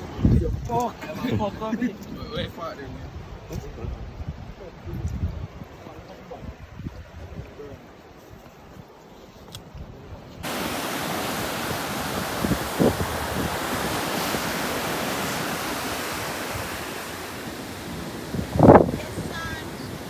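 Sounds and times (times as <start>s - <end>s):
wind: 0.0s - 20.0s
surf: 10.4s - 20.0s.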